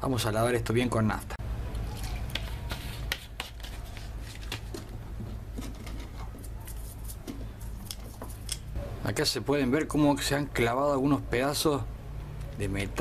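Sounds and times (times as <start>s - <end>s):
clicks and scrapes of parts: 2.2s - 8.8s.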